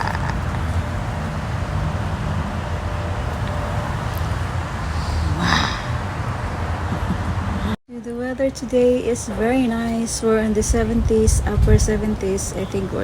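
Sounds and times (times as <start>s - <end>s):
distant road traffic rumble: 0.0s - 13.0s.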